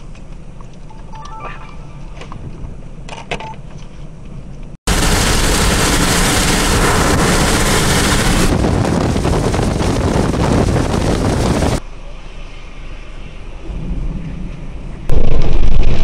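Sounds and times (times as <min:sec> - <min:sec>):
sharp cracks: 0:04.9 - 0:10.0
strong wind on microphone: 0:04.9 - 0:11.8.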